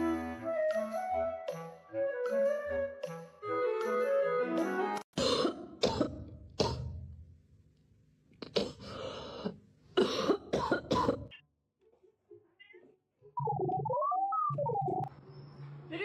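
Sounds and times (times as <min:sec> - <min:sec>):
harsh cough-like hacks: 0:05.2 - 0:07.0, 0:08.4 - 0:11.4.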